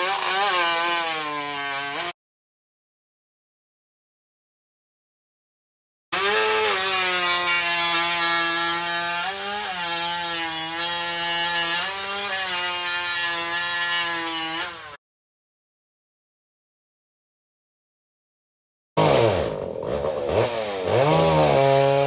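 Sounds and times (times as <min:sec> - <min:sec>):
chainsaw cutting wood: 0:00.0 - 0:02.2, 0:06.2 - 0:15.0, 0:19.0 - 0:22.0.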